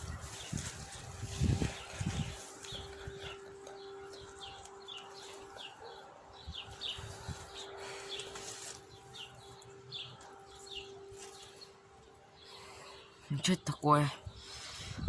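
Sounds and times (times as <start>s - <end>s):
distant warning siren: 0.0s - 14.6s
bird chirping: 0.0s - 15.0s.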